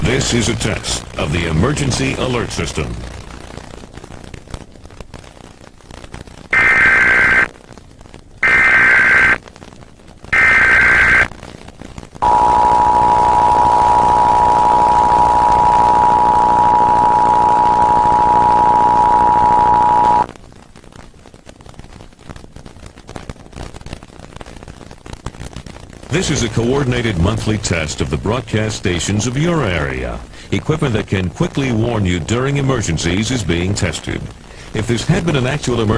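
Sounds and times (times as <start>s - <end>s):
digital data tone bursts: 6.6s - 7.5s, 8.4s - 9.4s, 10.4s - 11.3s, 12.2s - 20.3s.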